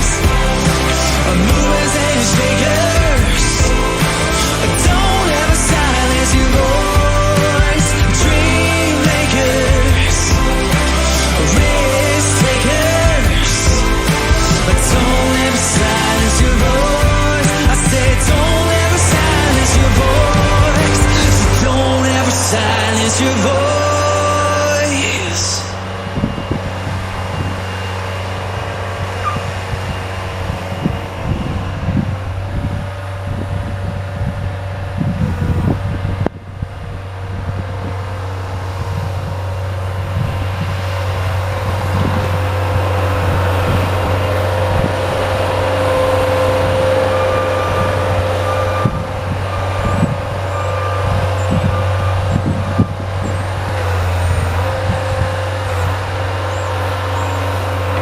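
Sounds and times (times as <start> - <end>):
snow-clearing machine engine: 0.0 - 58.0.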